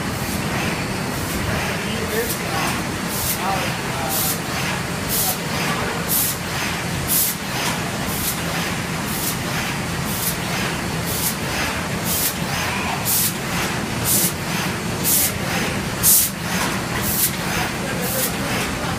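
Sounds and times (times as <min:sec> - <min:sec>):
machine humming: 0:00.0 - 0:18.9
short hissing bursts: 0:03.1 - 0:15.4.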